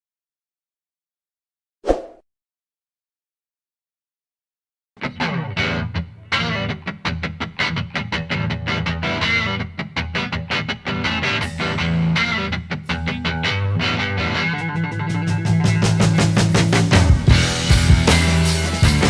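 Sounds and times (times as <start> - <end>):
rock music with electric guitar: 5.0 - 19.0.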